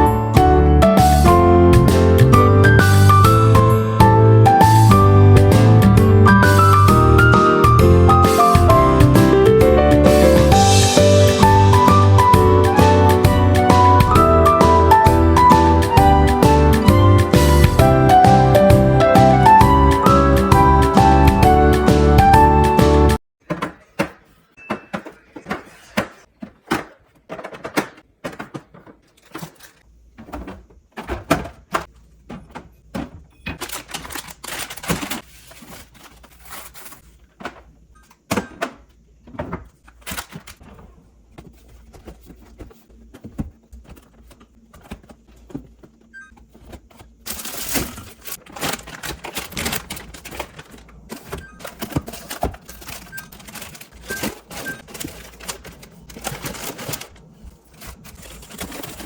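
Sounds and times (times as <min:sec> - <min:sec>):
containers clattering on fridge shelves: 0:23.4 - 0:59.0.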